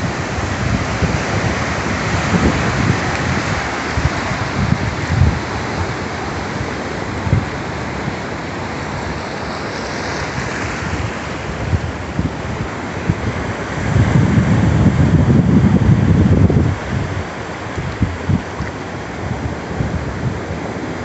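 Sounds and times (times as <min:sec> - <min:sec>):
surf washing onto beach: 0:00.0 - 0:21.0
wind buffeting microphone: 0:00.0 - 0:21.0.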